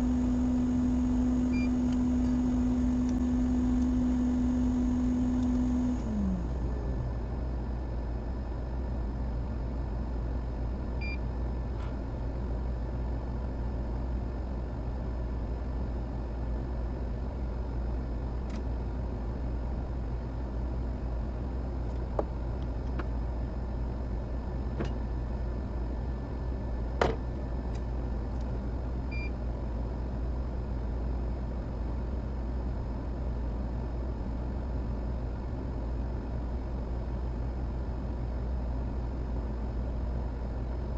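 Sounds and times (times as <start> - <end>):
machine hum: 0.0 - 32.0.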